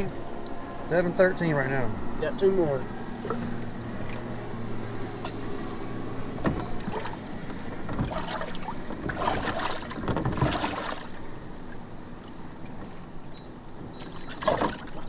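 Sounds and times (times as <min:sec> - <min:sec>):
boat motor hum: 0:00.0 - 0:15.0
water splashing: 0:03.2 - 0:05.5, 0:06.7 - 0:15.0.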